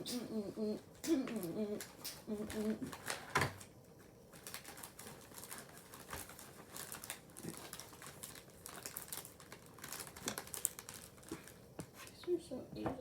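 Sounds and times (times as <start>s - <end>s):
packaging crinkling and clicking: 1.3s - 3.7s, 4.3s - 11.6s.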